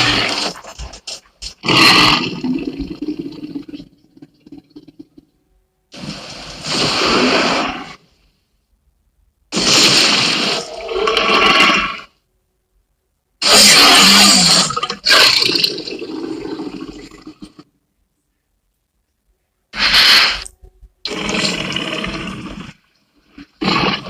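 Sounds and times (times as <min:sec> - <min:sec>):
dinosaur roars: 0:13.4 - 0:17.6, 0:21.1 - 0:22.8.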